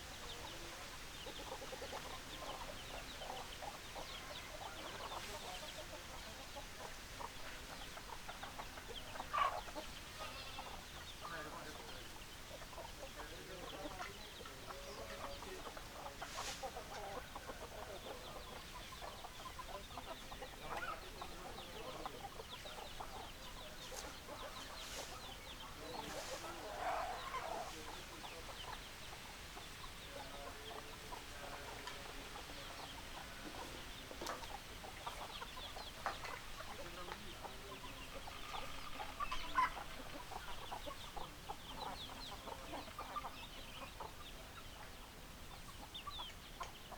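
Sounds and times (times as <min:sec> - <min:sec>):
hens clucking and chattering: 0:00.0 - 0:46.9.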